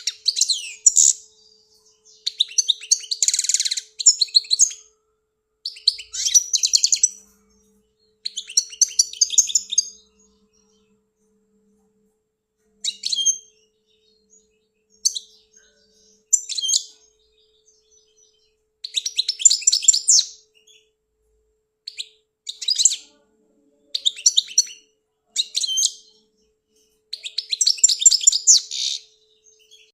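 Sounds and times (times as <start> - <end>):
finch twittering song: 0.0 - 5.0, 5.6 - 11.1, 12.8 - 21.0, 21.8 - 23.2, 23.8 - 29.9
faint low hum: 0.0 - 27.6.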